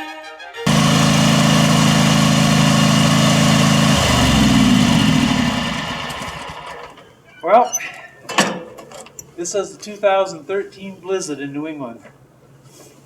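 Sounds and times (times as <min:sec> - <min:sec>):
engine running: 0:00.7 - 0:07.0.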